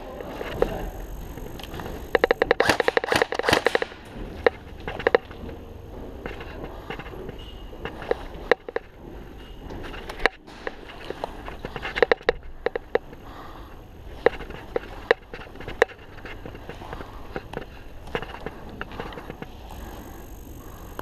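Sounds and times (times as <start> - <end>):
footsteps: 0.0 - 19.7
sharp clicks: 1.2 - 5.3.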